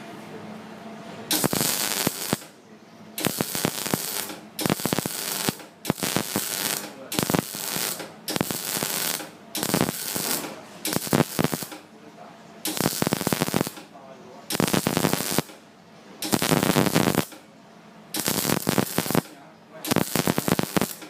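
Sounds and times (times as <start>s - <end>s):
welding arc crackling: 1.3s - 2.6s, 3.2s - 11.9s, 12.6s - 13.9s, 14.5s - 15.6s, 16.2s - 17.4s, 18.2s - 21.0s.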